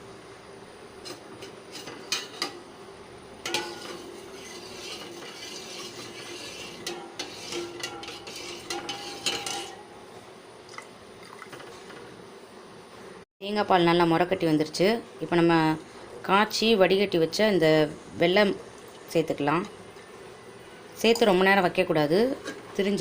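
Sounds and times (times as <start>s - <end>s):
utensil scraping and clinking pan: 1.0s - 2.6s, 3.4s - 9.8s.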